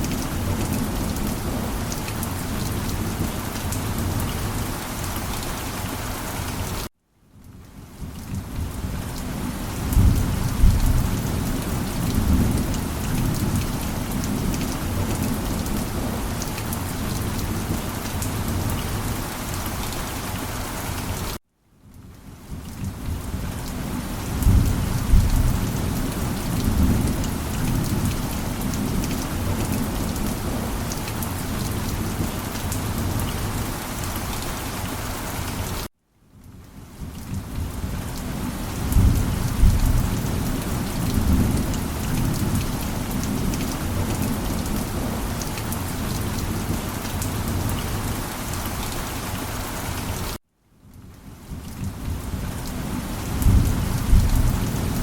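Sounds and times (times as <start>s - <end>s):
steady rain falling: 0.0s - 55.0s
thunder rumbling: 9.8s - 16.4s, 22.8s - 33.6s, 38.7s - 45.5s, 53.3s - 55.0s.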